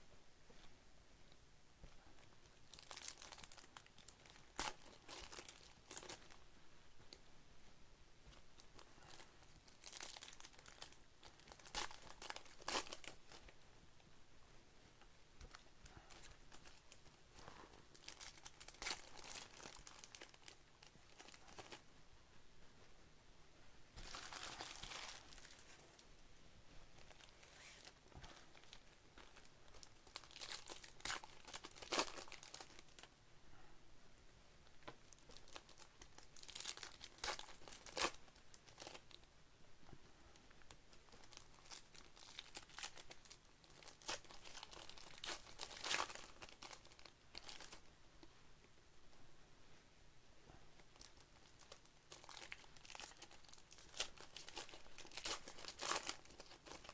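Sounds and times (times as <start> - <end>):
foil wrappers tearing and crinkling: 29.9 - 33.1, 35.4 - 39.1, 41.3 - 47.8, 51.0 - 56.9.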